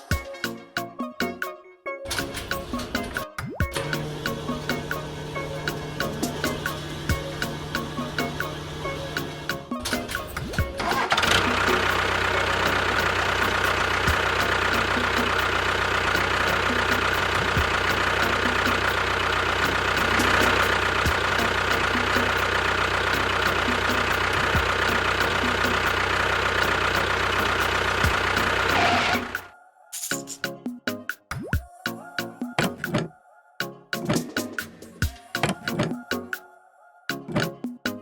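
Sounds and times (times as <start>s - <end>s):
small engine with rattly knock: 3.8s - 29.5s.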